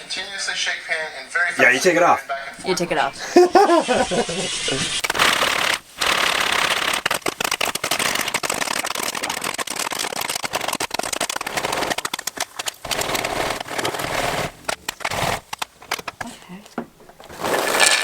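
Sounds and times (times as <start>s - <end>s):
steady hiss: 0.0s - 9.8s
popcorn popping: 3.6s - 18.0s.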